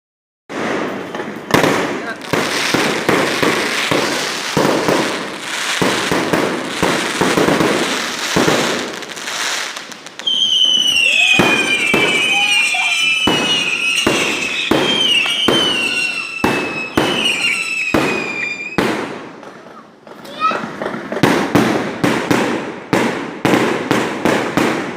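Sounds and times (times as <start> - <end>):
fireworks bangs and crackling: 0.5 - 24.9
long high falling whistle: 10.2 - 18.8.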